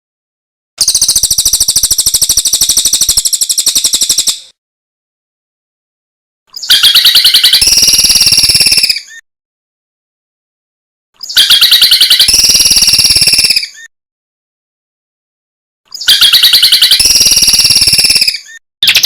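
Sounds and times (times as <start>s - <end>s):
songbird trills: 0.8s - 4.5s, 6.6s - 9.2s, 11.2s - 13.9s, 16.0s - 19.0s.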